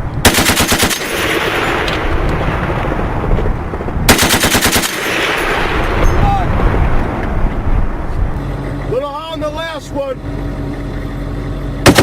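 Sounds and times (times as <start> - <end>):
machine gun firing bursts: 0.2 - 1.9, 4.1 - 5.8.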